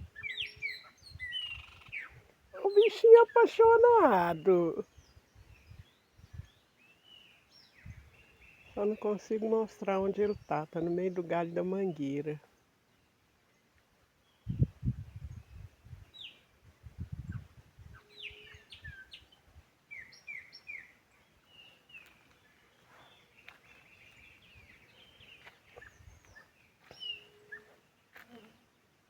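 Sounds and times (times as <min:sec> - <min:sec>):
small birds chirping and singing: 0:00.0 - 0:28.8.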